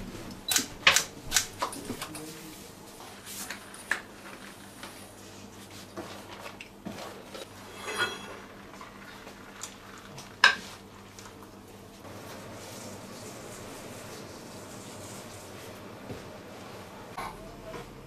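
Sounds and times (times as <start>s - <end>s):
utensils and dishes clinking: 7.2s - 8.8s.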